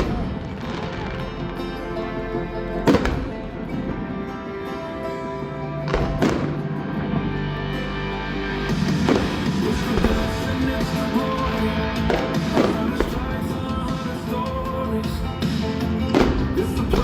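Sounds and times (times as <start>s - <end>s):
firework shells booming: 0.0s - 1.6s, 2.9s - 4.4s, 5.9s - 6.8s, 8.8s - 14.3s, 15.4s - 17.0s
music playing: 0.0s - 17.0s.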